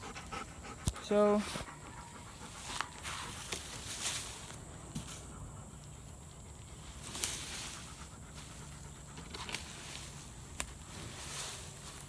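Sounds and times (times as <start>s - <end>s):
breathy panting: 0.0s - 3.4s.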